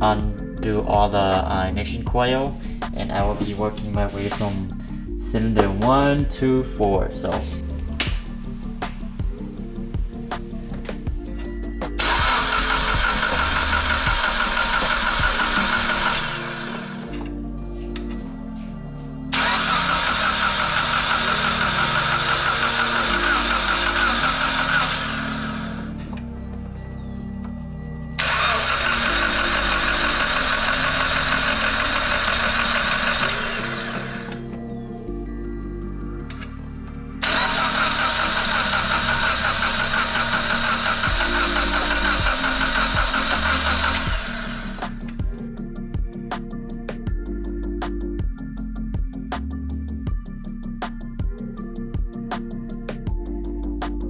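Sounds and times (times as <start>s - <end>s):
starter motor cranking engine: 0.0s - 9.7s, 11.9s - 17.2s, 19.4s - 26.0s, 28.2s - 34.6s, 37.2s - 45.4s
background music: 0.0s - 54.0s.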